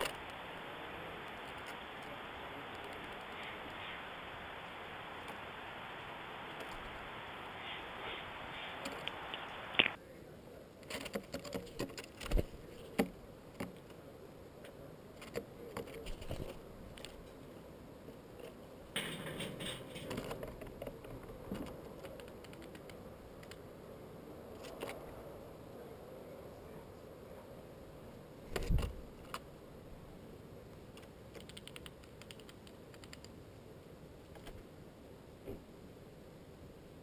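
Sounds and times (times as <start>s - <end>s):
rustle: 0.0s - 37.0s
animals pecking peanuts: 10.8s - 14.0s, 14.7s - 17.5s, 18.2s - 23.7s, 30.7s - 33.4s.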